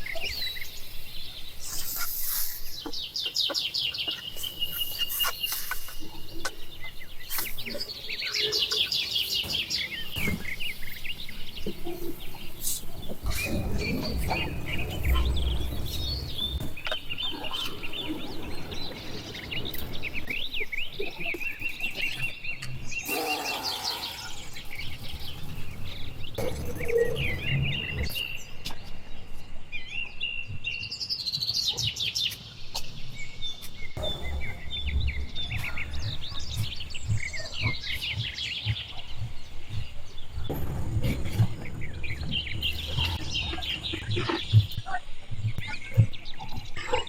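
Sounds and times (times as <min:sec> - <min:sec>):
small birds chirping: 0:00.0 - 0:47.0
low background rumble: 0:10.8 - 0:21.1.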